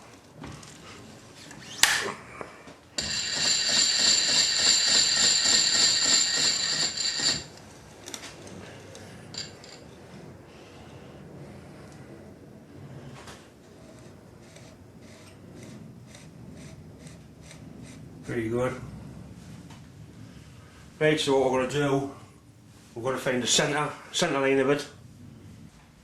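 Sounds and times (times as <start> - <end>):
milling machine motor whine: 3.0 - 7.7.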